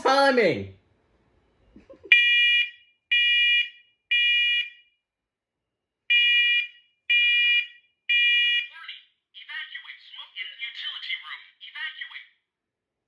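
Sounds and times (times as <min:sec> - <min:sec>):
smoke alarm beeping: 0:02.1 - 0:04.9, 0:06.1 - 0:08.7.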